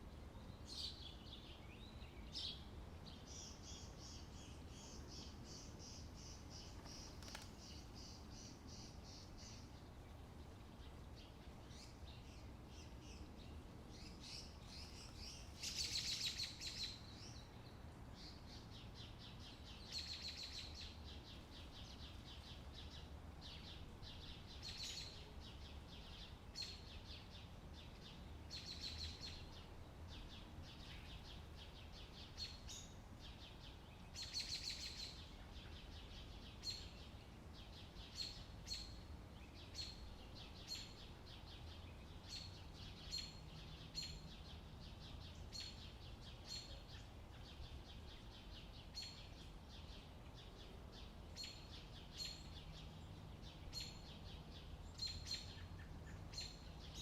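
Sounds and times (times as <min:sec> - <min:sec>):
small birds chirping: 0:00.0 - 0:57.0.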